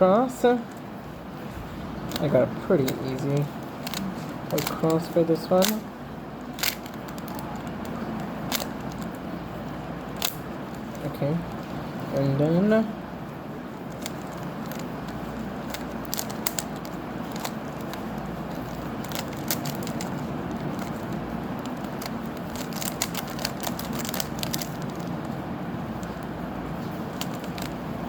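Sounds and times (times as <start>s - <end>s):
steady background noise: 0.0s - 28.0s
plastic puzzle cube clicking: 2.1s - 5.8s, 6.4s - 9.2s, 10.2s - 11.6s, 13.9s - 25.3s, 27.1s - 27.8s.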